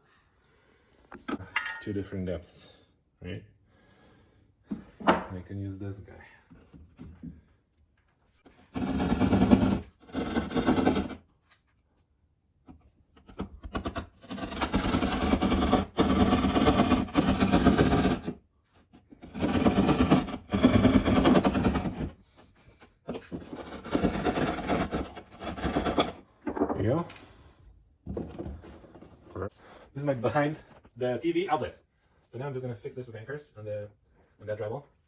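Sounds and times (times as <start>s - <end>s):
hand saw cutting drywall: 8.5s - 11.3s, 13.2s - 22.4s, 23.0s - 26.3s.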